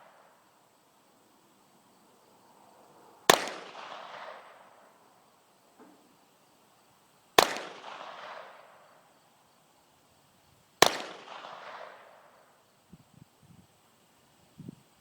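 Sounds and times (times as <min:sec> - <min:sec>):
pistol shots: 0:03.3 - 0:04.8, 0:07.4 - 0:08.8, 0:10.8 - 0:12.3.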